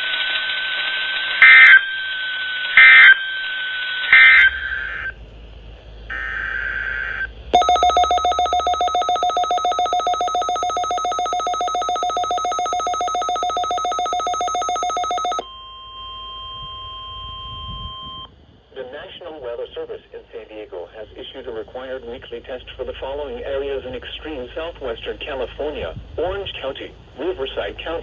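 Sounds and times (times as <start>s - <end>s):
steady warning alarm tone: 7.6s - 15.4s
trilling electronic alert tone: 7.6s - 15.4s.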